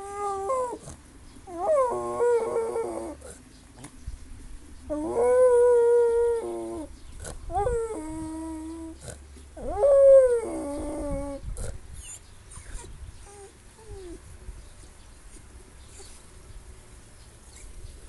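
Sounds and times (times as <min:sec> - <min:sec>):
dog howling: 0:01.5 - 0:03.3, 0:04.9 - 0:06.9, 0:09.6 - 0:11.4.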